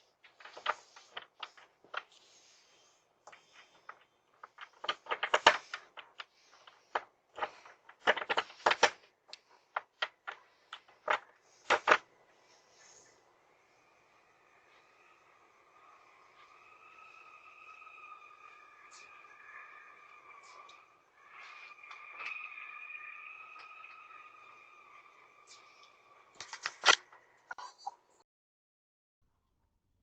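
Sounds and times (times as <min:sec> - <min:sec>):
sharp clicks and knocks: 0:03.2 - 0:12.1.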